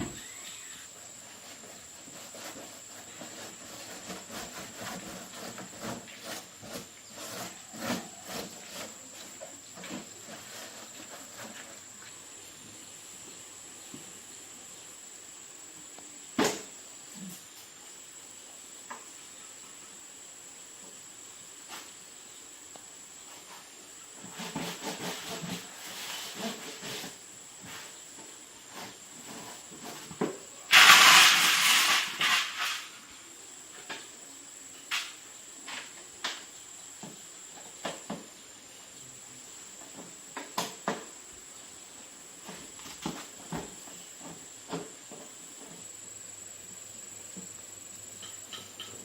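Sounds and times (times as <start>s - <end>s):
faint high whine: 0.0s - 4.0s
loud hiss: 20.0s - 33.7s.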